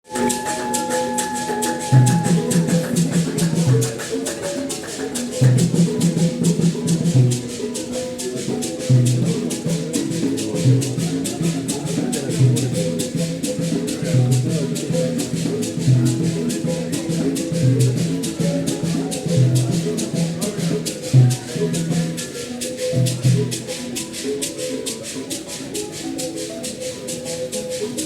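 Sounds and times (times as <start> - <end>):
fast shaker rhythm: 0.0 - 28.0
low drum beat: 1.6 - 4.0, 5.4 - 7.5, 8.9 - 22.2.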